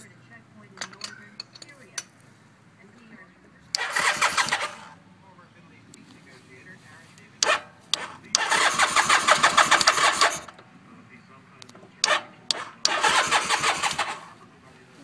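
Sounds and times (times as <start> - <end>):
motorcycle starter cranking engine: 3.7 - 5.0, 7.4 - 10.7, 11.7 - 14.4.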